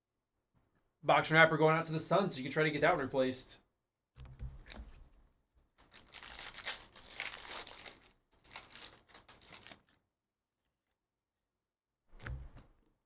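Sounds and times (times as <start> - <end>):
plastic foil wrapper crinkling: 5.8 - 10.0.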